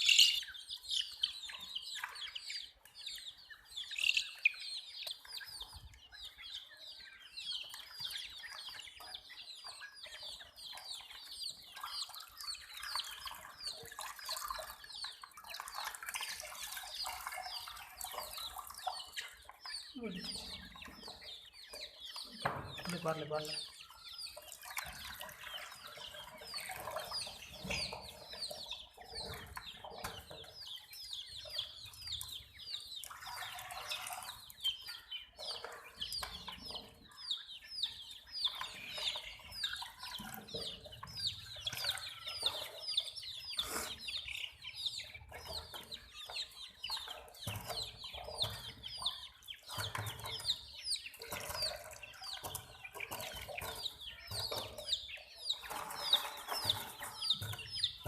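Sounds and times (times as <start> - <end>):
baby chicks peeping: 0.0 - 58.0.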